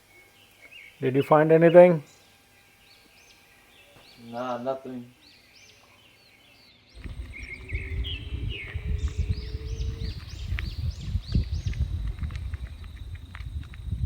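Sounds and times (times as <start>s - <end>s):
birds chirping: 0.0s - 14.0s
faint steady hum: 0.0s - 14.0s
wind buffeting microphone: 6.9s - 14.0s.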